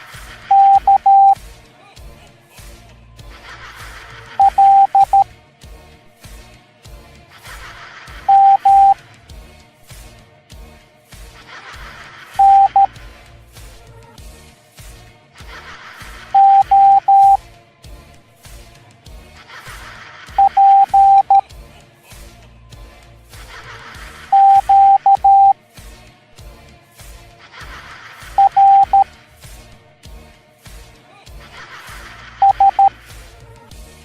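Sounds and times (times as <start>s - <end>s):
background music with steady beat: 0.0s - 34.0s
morse code beeps: 0.5s - 1.4s, 4.4s - 5.2s, 8.3s - 9.0s, 12.4s - 12.9s, 16.4s - 17.4s, 20.4s - 21.4s, 24.3s - 25.6s, 28.4s - 29.1s, 32.4s - 33.0s.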